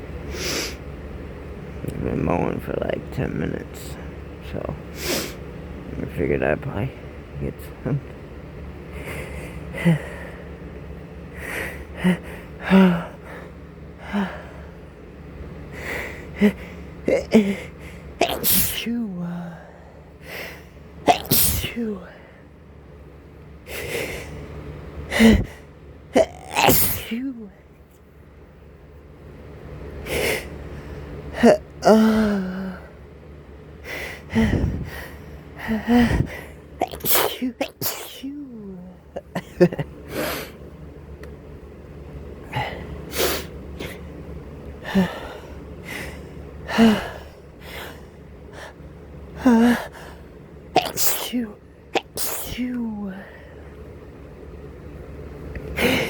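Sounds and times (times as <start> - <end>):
steady low hum: 0.0 - 56.0
sharp intake of breath: 0.2 - 0.9, 4.9 - 5.5, 42.5 - 44.0
man sneezing: 17.1 - 17.6, 18.2 - 19.3, 21.0 - 22.2, 26.2 - 27.4, 31.4 - 32.3, 35.9 - 38.5, 50.8 - 52.8.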